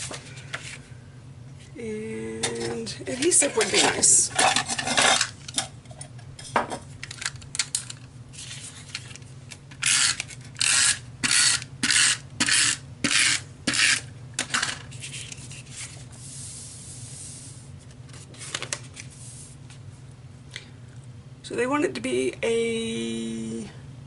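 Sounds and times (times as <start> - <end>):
paper handling clicks: 18.1 - 19.1.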